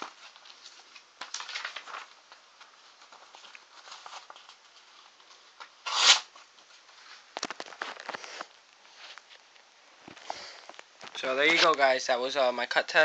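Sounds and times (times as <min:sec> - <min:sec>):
crackling paper rustles: 0:00.0 - 0:12.0
knife blade slicing paper: 0:05.8 - 0:06.3.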